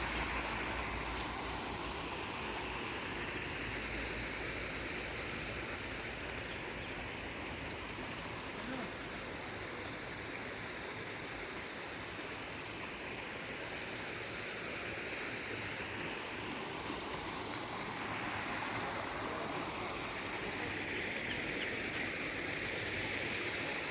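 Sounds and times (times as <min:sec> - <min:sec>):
running water: 0:00.0 - 0:23.9.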